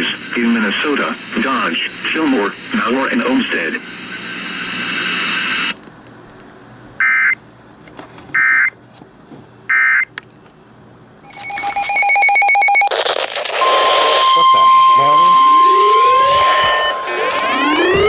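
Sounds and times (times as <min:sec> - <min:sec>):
steady static: 0:00.0 - 0:05.8, 0:11.3 - 0:18.0
digital data tone bursts: 0:11.3 - 0:18.0
harsh pulsing buzz: 0:13.5 - 0:18.0.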